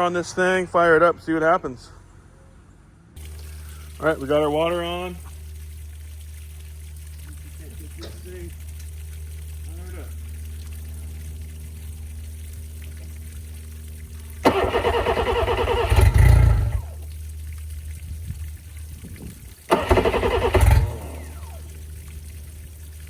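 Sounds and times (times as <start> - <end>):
outboard engine cranking: 14.2 - 17.0, 19.7 - 22.2.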